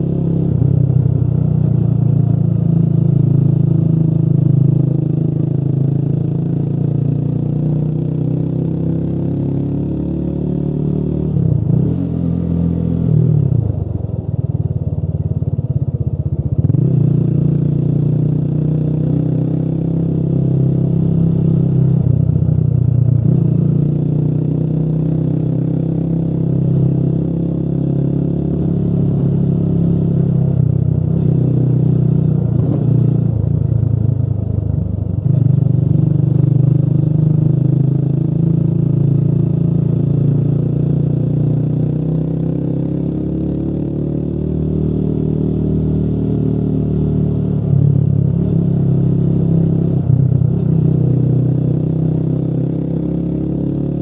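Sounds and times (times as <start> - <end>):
motorcycle engine revving: 0.0 - 14.7, 16.5 - 54.0.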